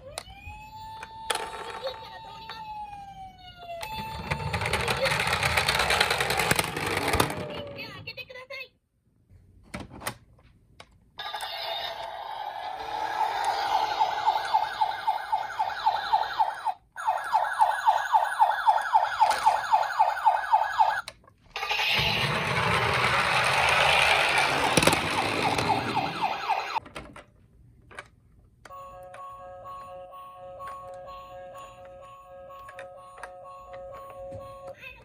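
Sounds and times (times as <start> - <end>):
toy siren yelping: 0.0 - 5.4, 11.2 - 26.8.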